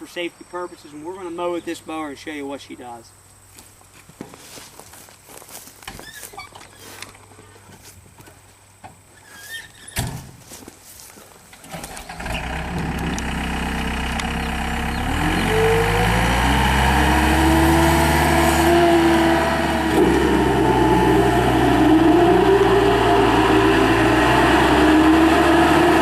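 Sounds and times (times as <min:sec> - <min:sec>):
diesel engine starting and revving: 0:11.6 - 0:26.0.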